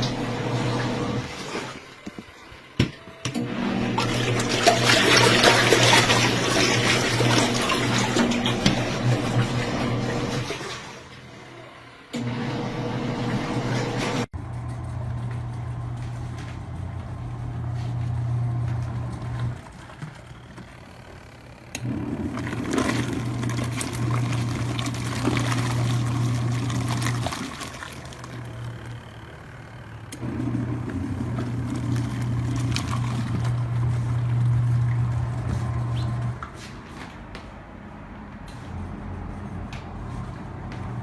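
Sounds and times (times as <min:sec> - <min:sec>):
washing machine motor humming: 0:00.0 - 0:36.4
water and clothes churning: 0:03.7 - 0:11.2, 0:18.8 - 0:21.1, 0:21.8 - 0:28.8, 0:30.2 - 0:36.4.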